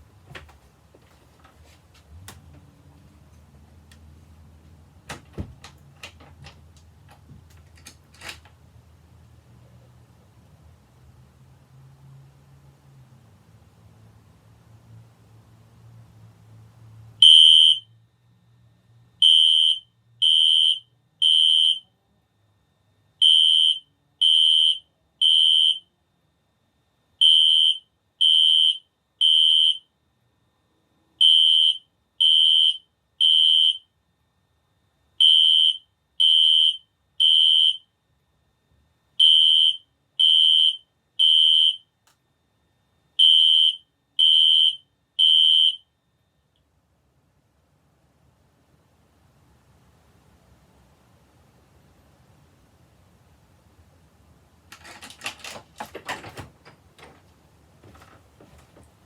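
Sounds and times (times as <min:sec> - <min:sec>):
fire alarm beeping: 0:17.2 - 0:17.9, 0:19.2 - 0:21.9, 0:23.2 - 0:25.9, 0:27.2 - 0:29.9, 0:31.2 - 0:33.9, 0:35.2 - 0:37.9, 0:39.2 - 0:41.9, 0:43.2 - 0:46.0.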